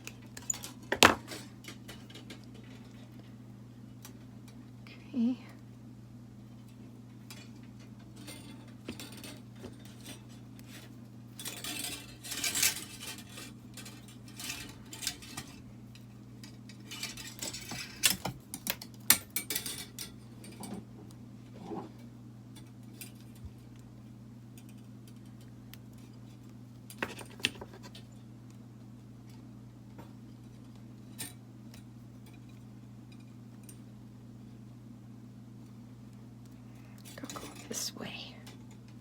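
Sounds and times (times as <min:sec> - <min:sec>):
steady low hum: 0:00.0 - 0:39.0
small metal tools clinking and scraping: 0:08.1 - 0:15.6, 0:16.4 - 0:18.3.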